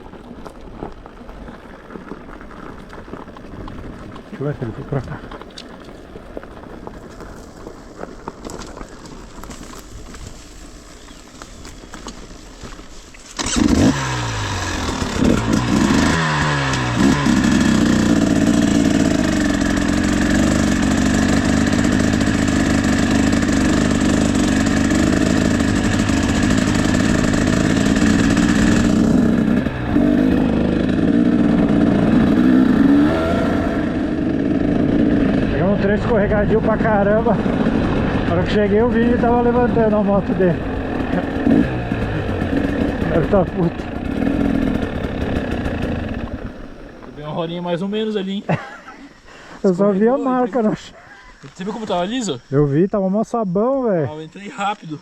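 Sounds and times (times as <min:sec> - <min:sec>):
two-stroke motorcycle revving: 0:12.0 - 0:47.6.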